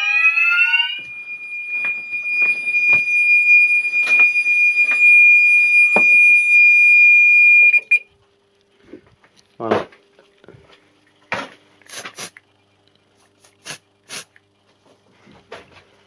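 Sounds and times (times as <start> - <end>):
steady high-pitched alarm tone: 0.0 - 8.0
sweeping multi-tone siren: 0.0 - 8.0.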